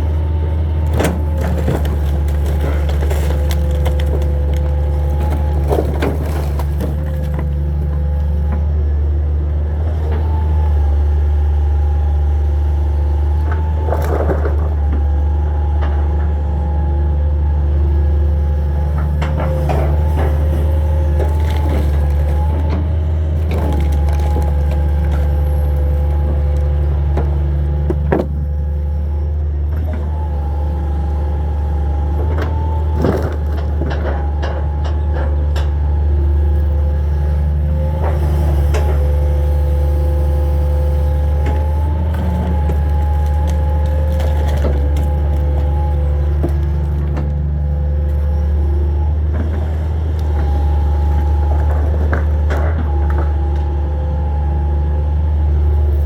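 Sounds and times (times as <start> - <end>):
excavator diesel engine running: 0.0 - 56.0
wood and debris knocking: 0.8 - 8.2, 19.6 - 28.4, 41.5 - 47.4.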